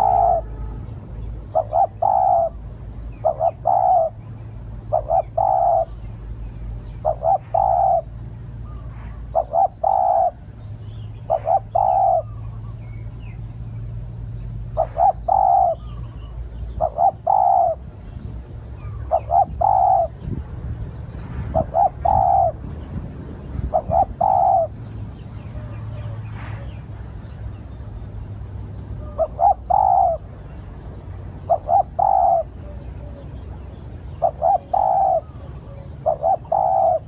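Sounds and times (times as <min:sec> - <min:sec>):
dove cooing: 0:00.0 - 0:00.8, 0:01.4 - 0:10.5, 0:11.2 - 0:12.5, 0:14.7 - 0:18.2, 0:18.8 - 0:20.4, 0:21.4 - 0:26.9, 0:29.0 - 0:30.5, 0:31.4 - 0:37.0.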